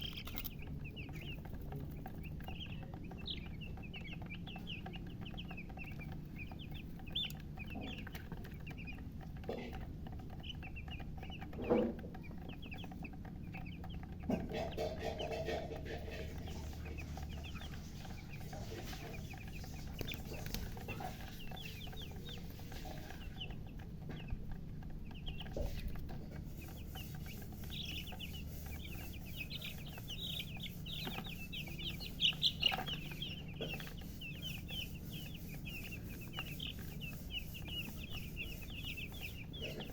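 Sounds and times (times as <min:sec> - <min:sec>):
chicks peeping: 0:00.0 - 0:39.9
lower louder bird calls: 0:00.0 - 0:39.9
steady low hum: 0:00.0 - 0:39.9.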